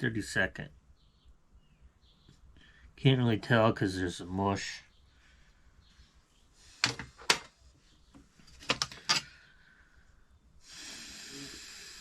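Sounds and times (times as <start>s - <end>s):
metal sockets clinking: 8.5s - 9.3s
steady hiss: 10.6s - 12.0s.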